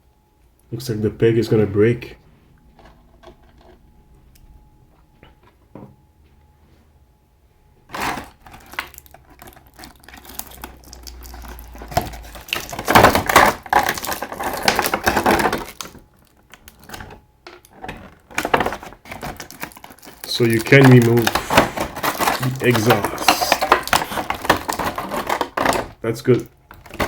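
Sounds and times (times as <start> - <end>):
plastic parts clicking and clattering: 7.9 - 27.0.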